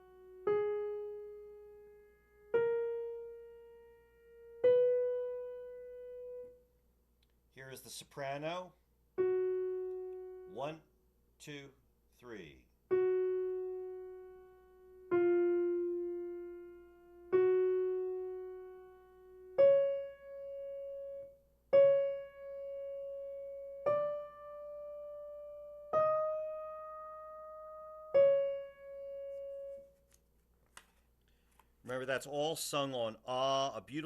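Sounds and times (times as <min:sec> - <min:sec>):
slow piano single notes: 0:00.0 - 0:06.8, 0:09.2 - 0:11.1, 0:12.8 - 0:30.2.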